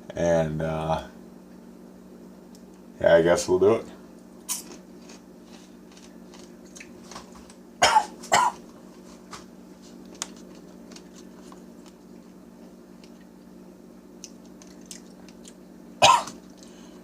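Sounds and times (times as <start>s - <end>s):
man coughing: 7.8s - 8.6s, 16.0s - 16.4s.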